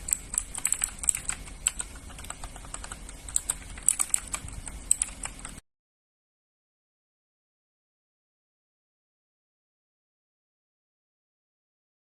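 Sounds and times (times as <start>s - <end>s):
mechanical keyboard typing: 0.0s - 5.6s.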